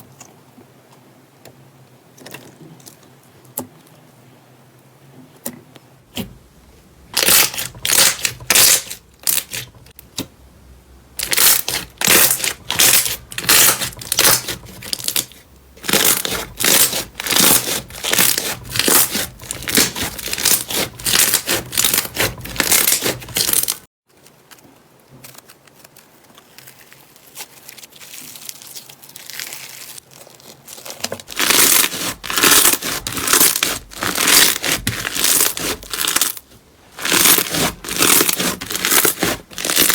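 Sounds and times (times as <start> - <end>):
slime crackling and popping: 7.2 - 9.7, 11.2 - 23.8, 25.2 - 36.4, 37.0 - 39.9.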